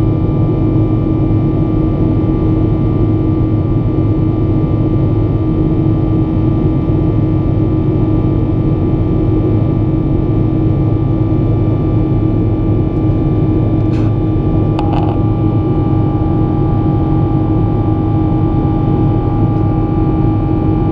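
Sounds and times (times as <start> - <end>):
airplane engine and airflow noise: 0.0 - 20.9.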